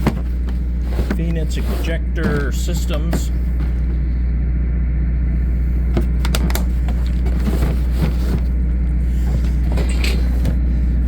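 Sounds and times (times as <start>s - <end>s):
loud low drone: 0.0s - 6.3s
clicks and rattles of tools: 9.3s - 10.6s.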